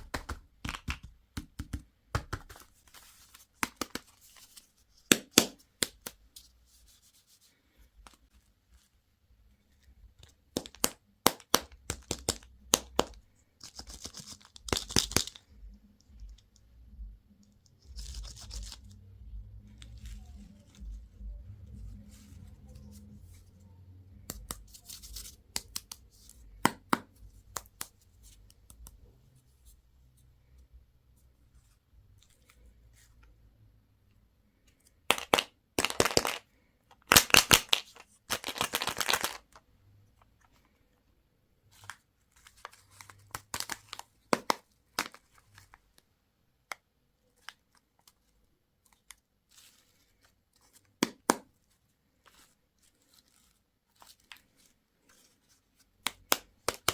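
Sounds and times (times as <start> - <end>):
packaging crinkling: 37.1 - 39.5.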